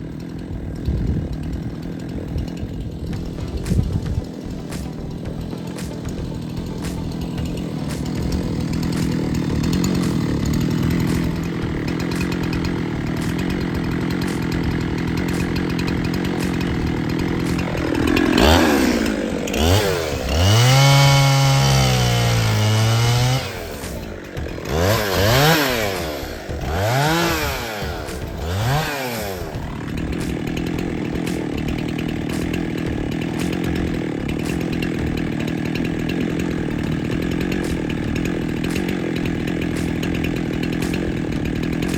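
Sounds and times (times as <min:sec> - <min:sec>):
chainsaw revving: 0:00.0 - 0:41.9
chainsaw running: 0:00.0 - 0:41.9.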